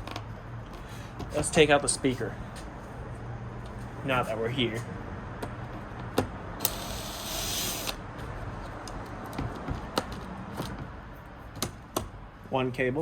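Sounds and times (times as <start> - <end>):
hissing whir: 6.6 - 8.0.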